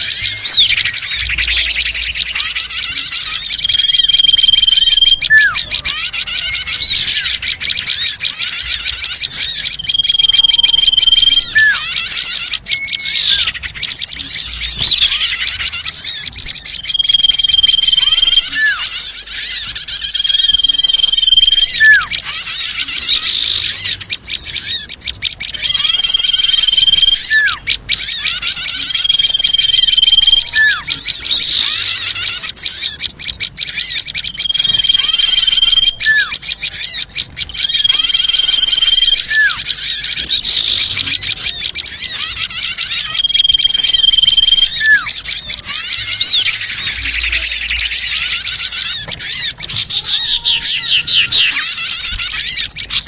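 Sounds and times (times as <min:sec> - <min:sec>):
small birds chirping: 0:00.0 - 0:53.0.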